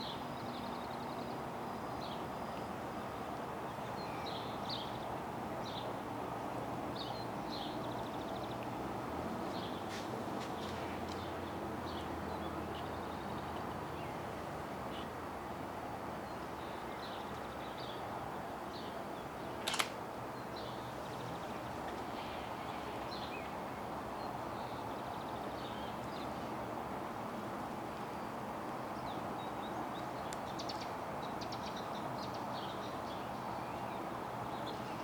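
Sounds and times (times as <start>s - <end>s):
outdoor background noise: 0.0s - 35.0s
sharp click: 19.6s - 20.0s.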